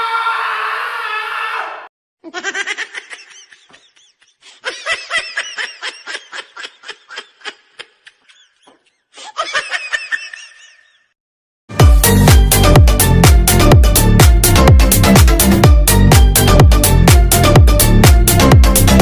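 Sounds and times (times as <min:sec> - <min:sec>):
person laughing: 0:02.2 - 0:11.1
electronic dance music: 0:11.7 - 0:19.0.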